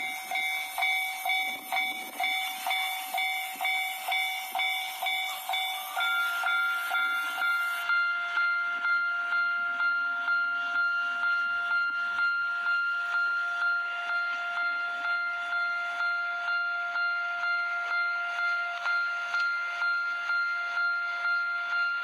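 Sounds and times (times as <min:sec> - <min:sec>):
level-crossing alarm dinging: 0:00.0 - 0:22.0.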